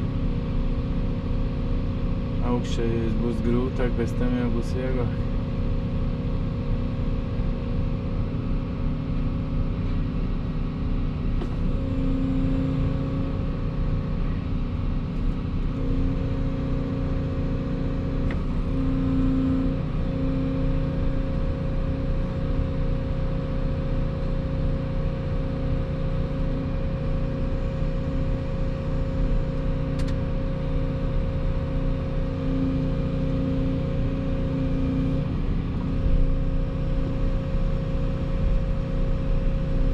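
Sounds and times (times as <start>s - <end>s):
excavator engine drone: 0.0s - 39.9s
hydraulic whine: 11.3s - 14.5s, 15.1s - 22.4s.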